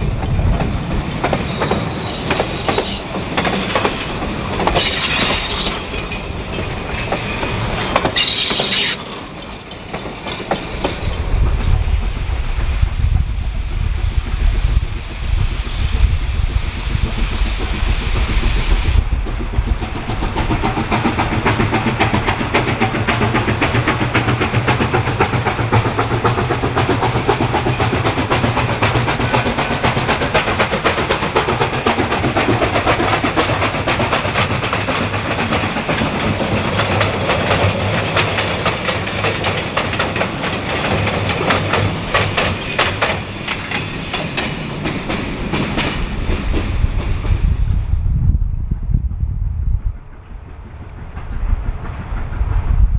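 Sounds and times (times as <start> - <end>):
steam train running: 0.0 - 48.1, 49.8 - 52.9.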